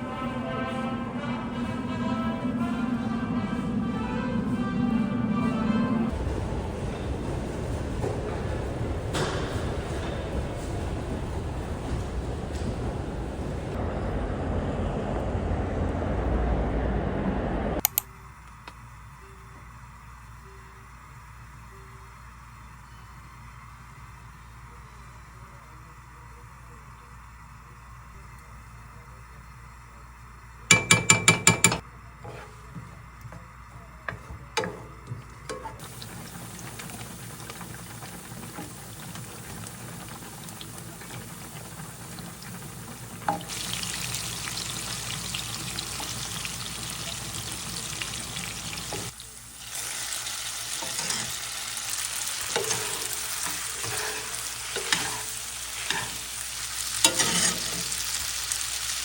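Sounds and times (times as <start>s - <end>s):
food frying and sizzling: 27.3s - 59.0s.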